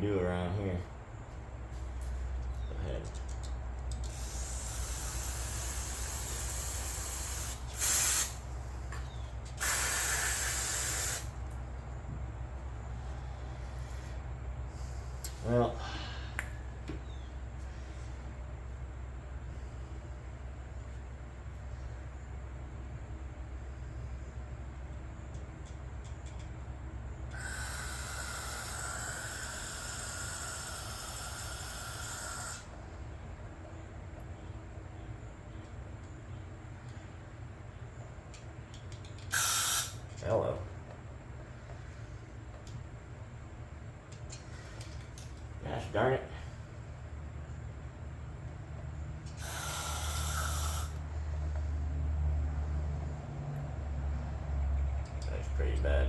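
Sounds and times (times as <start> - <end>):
aerosol spray hissing: 4.0 - 8.8, 9.6 - 11.4, 27.4 - 32.7, 39.3 - 40.0, 49.3 - 51.0
loud spray blasts: 4.0 - 8.8, 9.5 - 11.4, 27.4 - 32.6, 39.3 - 40.0, 49.3 - 51.0.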